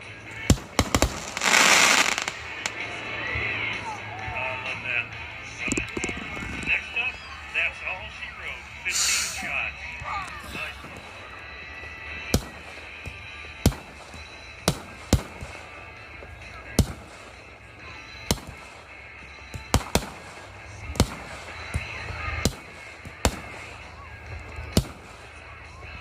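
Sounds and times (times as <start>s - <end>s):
fireworks bangs: 0.4s - 3.6s, 12.2s - 13.0s, 13.6s - 15.8s, 19.6s - 23.8s.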